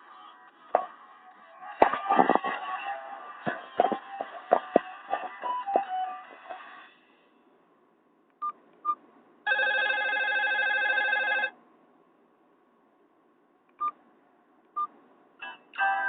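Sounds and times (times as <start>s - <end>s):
electronic phone ringtone: 9.5s - 11.5s.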